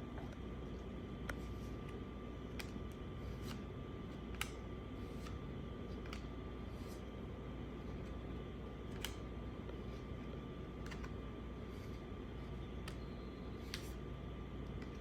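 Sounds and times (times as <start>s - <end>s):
steady low hum: 0.0s - 15.0s
trading cards being flipped: 1.3s - 7.1s, 8.9s - 11.2s, 12.8s - 14.0s.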